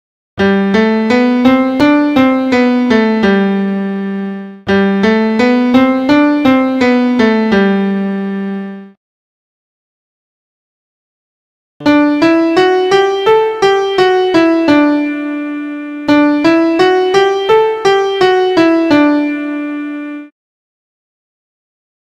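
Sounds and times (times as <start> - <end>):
piano keyboard melody: 0.4 - 9.0, 11.8 - 20.3.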